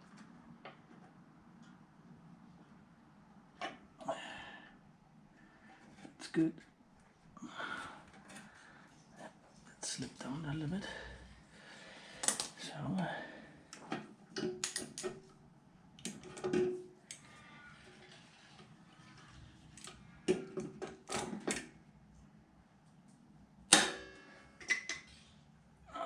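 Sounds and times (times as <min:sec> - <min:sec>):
small clicks of parts and tools: 0:12.2 - 0:12.6, 0:14.6 - 0:15.2, 0:16.0 - 0:17.3.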